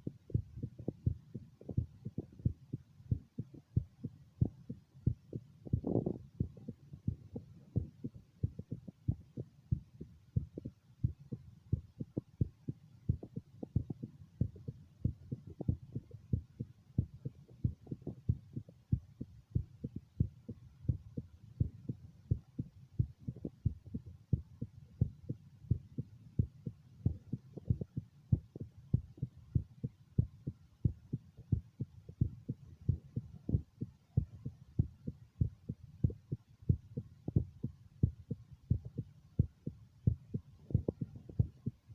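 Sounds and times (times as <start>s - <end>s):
heartbeat through stethoscope: 0.0s - 41.9s.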